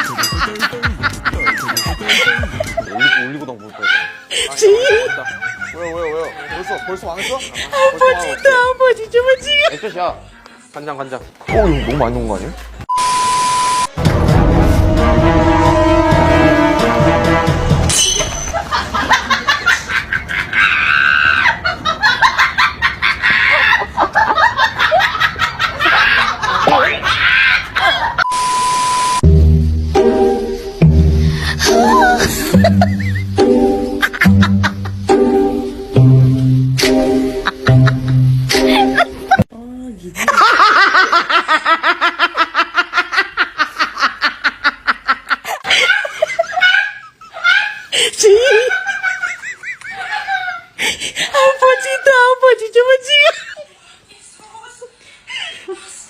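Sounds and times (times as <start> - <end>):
person laughing: 0.0 - 6.9, 31.6 - 33.4, 37.4 - 39.4, 40.2 - 51.4
people laughing and shrieking: 0.0 - 8.6, 18.3 - 28.2, 31.6 - 33.2, 45.0 - 52.3
steady beep: 12.9 - 14.0, 28.2 - 29.5.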